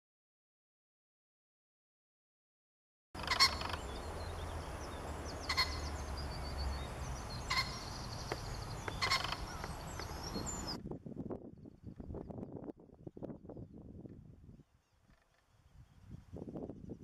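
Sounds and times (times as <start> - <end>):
harsh bird call: 3.2 - 4.1, 5.3 - 10.8
small songbirds twittering: 3.2 - 10.8.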